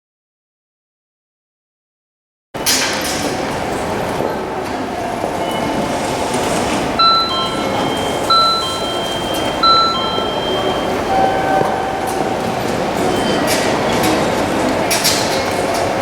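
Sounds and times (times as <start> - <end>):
train platform hum and rumble: 2.6 - 16.0
electronic platform chime: 7.0 - 12.4.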